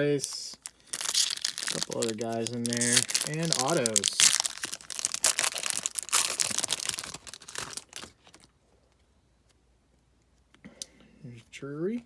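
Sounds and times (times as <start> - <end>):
plastic wrapper tearing and crinkling: 0.2 - 8.5.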